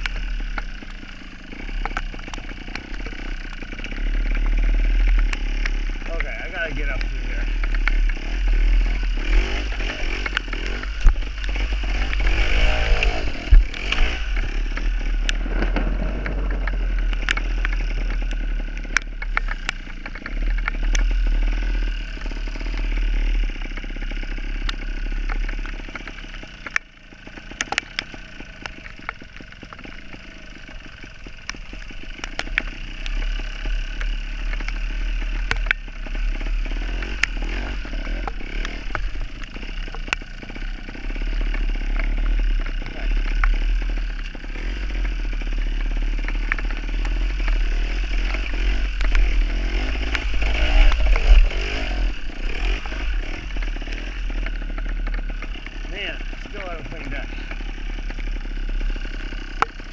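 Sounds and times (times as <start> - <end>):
motorcycle engine revving: 0.0 - 59.9
sharp knocks and clatter: 9.4 - 21.4.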